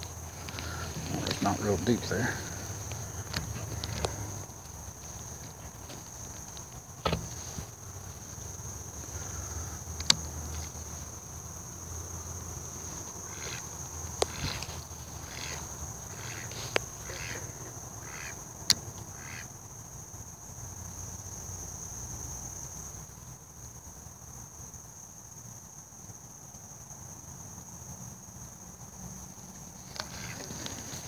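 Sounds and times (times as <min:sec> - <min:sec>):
insects shrilling: 0:00.0 - 0:31.0
sharp clicks: 0:10.0 - 0:10.3
short repeated calls: 0:14.2 - 0:18.4.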